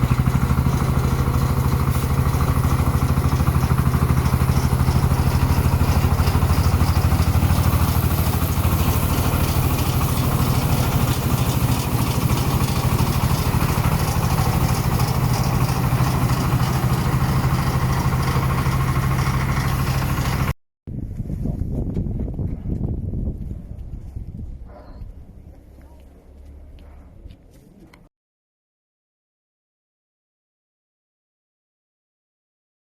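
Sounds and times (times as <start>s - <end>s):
engine running: 0.0s - 20.6s.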